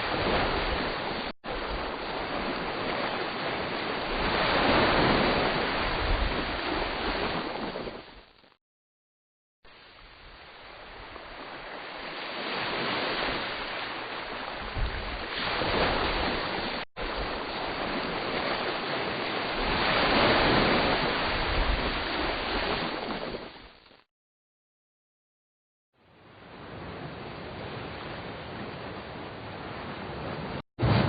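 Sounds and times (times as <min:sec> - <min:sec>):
ocean waves rushing: 0:00.0 - 0:08.3, 0:09.7 - 0:23.8, 0:30.1 - 0:31.0.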